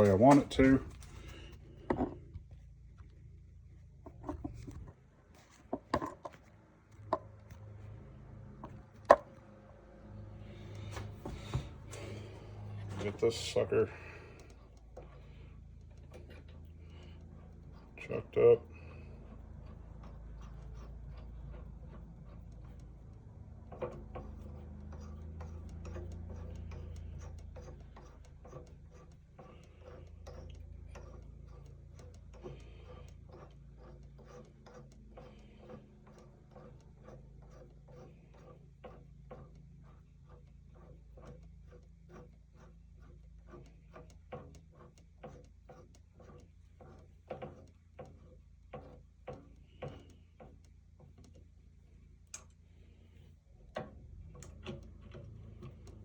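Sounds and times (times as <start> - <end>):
drill press humming: 7.2 - 45.4.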